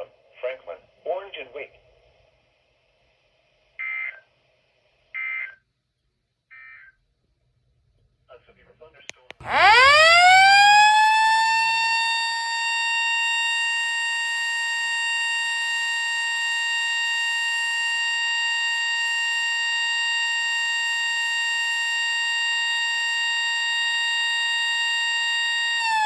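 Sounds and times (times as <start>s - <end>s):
siren steady wail: 9.3s - 26.0s.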